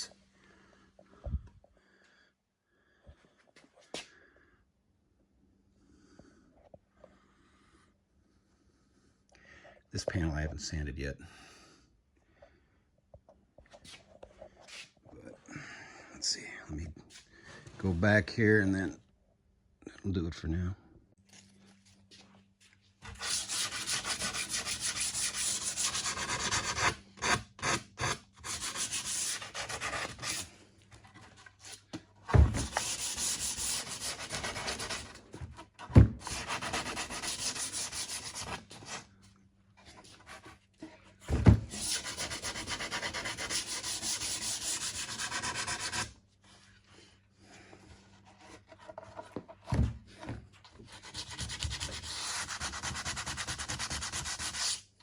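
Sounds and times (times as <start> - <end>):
sandpaper scratching wood: 23.1 - 30.5, 32.6 - 35.2, 36.2 - 39.0, 41.7 - 46.2, 50.9 - 54.9.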